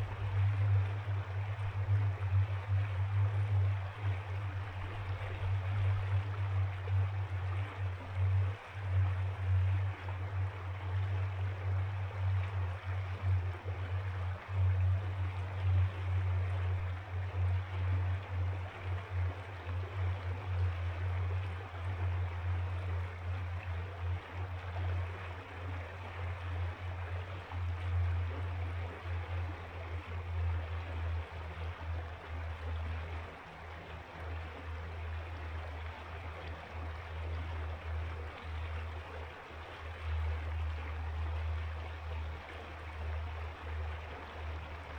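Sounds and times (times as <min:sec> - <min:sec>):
river flowing: 0:00.0 - 0:44.9.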